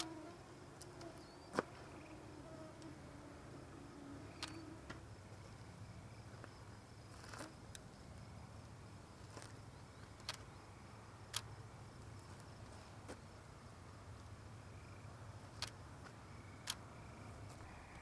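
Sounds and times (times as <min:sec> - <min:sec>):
insects trilling: 0:00.0 - 0:18.0
sharp clicks: 0:10.1 - 0:10.5, 0:11.3 - 0:11.5, 0:16.6 - 0:16.9.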